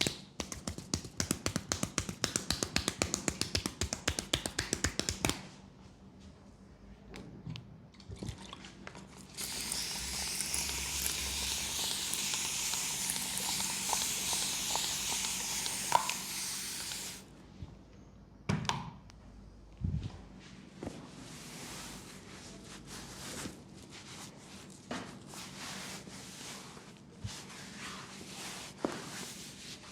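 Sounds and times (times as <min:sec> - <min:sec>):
steady spray hiss: 0:09.3 - 0:17.3.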